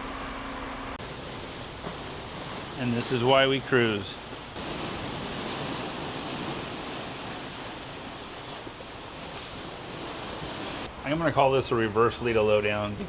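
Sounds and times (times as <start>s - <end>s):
wind rushing: 1.0s - 10.9s
sea water streaming: 1.0s - 13.0s.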